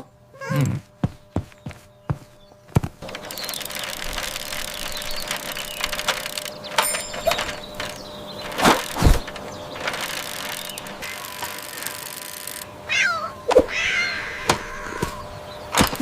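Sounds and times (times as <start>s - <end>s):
wood crackling and clattering: 1.0s - 12.6s, 15.7s - 16.0s.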